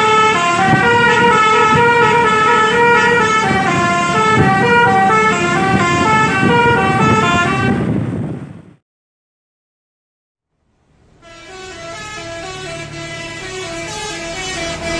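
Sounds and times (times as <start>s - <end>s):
multi-tone bus horn tune: 0.0s - 8.0s, 11.2s - 14.9s.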